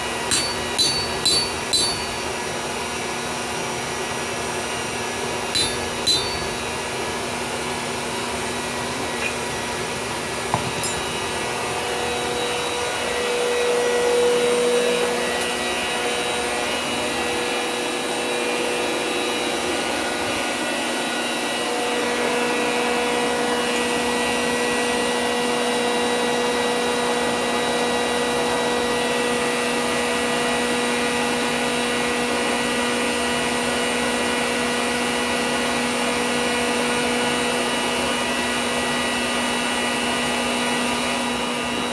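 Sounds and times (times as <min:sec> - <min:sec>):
forge blower whirring: 0:00.0 - 0:29.6
light metallic clinks: 0:00.3 - 0:02.4, 0:05.6 - 0:06.8, 0:10.6 - 0:11.2.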